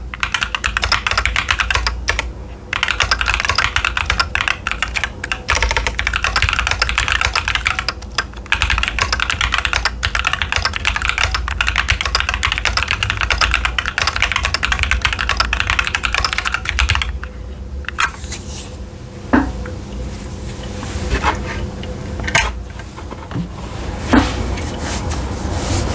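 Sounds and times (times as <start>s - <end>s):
fast typing on mechanical keyboard: 0.0s - 17.3s
sharp keyboard click: 0.1s - 17.2s.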